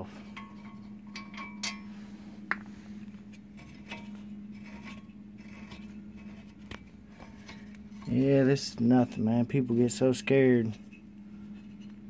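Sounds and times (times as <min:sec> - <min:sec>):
low steady hum: 0:00.0 - 0:12.0
metal parts clinking and scraping: 0:00.2 - 0:02.0, 0:03.5 - 0:10.0.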